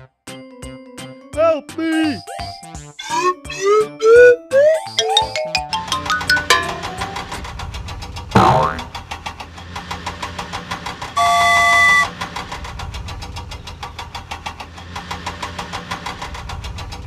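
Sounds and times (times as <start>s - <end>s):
horn honking: 11.2s - 12.1s.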